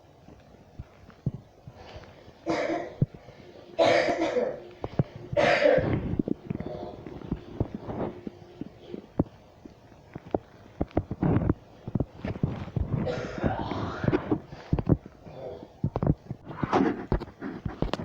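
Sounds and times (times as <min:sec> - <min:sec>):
woman coughing: 0:02.5 - 0:03.0, 0:03.8 - 0:04.6, 0:05.4 - 0:06.0
sharp clicks and knocks: 0:05.9 - 0:13.0, 0:15.8 - 0:18.0.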